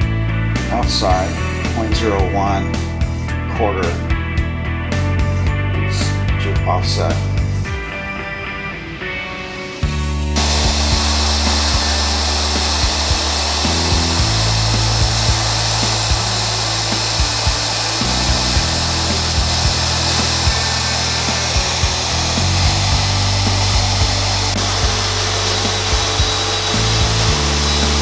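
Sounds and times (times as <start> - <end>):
background music with steady beat: 0.0 - 28.0
handheld router cutting plastic board: 10.4 - 28.0.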